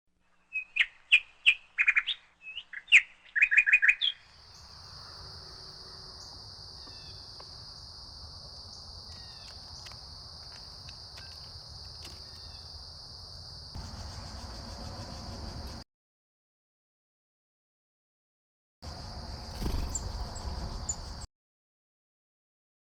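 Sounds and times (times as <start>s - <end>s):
bird chirping: 0.2s - 7.4s, 8.6s - 10.1s, 11.1s - 12.8s, 18.9s - 21.3s.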